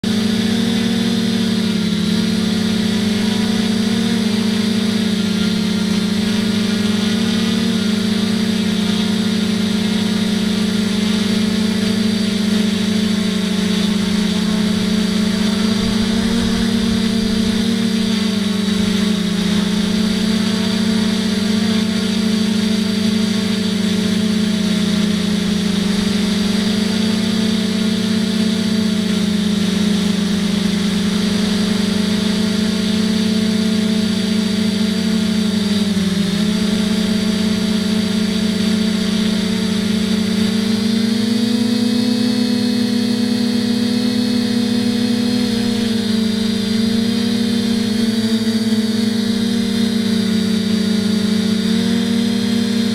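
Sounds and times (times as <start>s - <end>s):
quadcopter motors buzzing: 0.0s - 52.9s.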